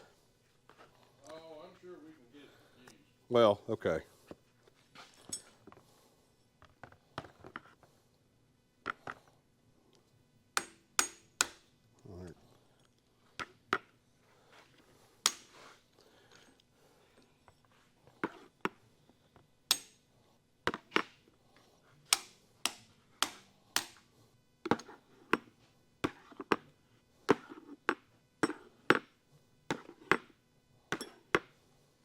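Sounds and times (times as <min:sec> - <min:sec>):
metal tools clicking and knocking: 0:19.7 - 0:20.0.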